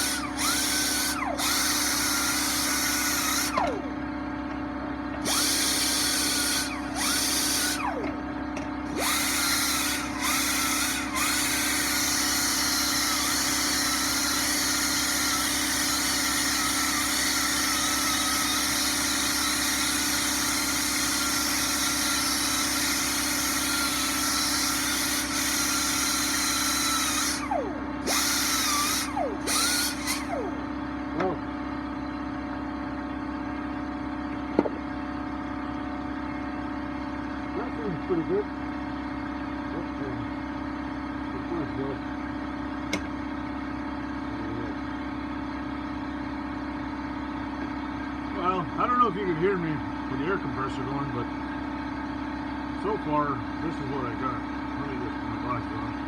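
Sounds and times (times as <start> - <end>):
power tool wire brush whining: 0.0 - 3.9, 5.2 - 30.8.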